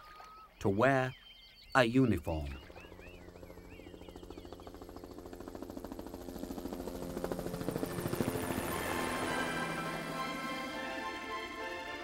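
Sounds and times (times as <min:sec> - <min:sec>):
helicopter rotor chop: 0:02.5 - 0:12.0
music: 0:08.0 - 0:12.0.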